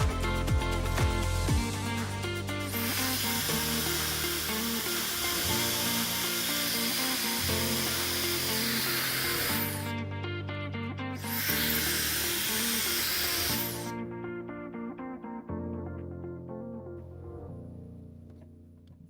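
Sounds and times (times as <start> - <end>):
background music: 0.0 - 18.9
hair dryer blowing: 1.0 - 9.9, 11.2 - 14.0.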